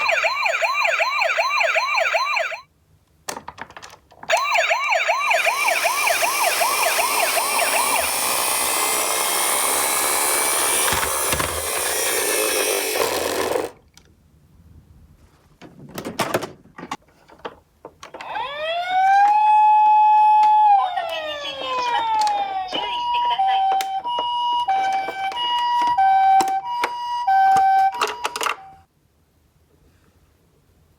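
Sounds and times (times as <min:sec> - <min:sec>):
wailing siren tone: 0:00.0 - 0:02.6, 0:04.3 - 0:10.5, 0:18.2 - 0:28.8
yelping toy siren: 0:00.0 - 0:02.6, 0:04.3 - 0:11.0, 0:18.2 - 0:28.8
clicks: 0:19.0 - 0:28.7.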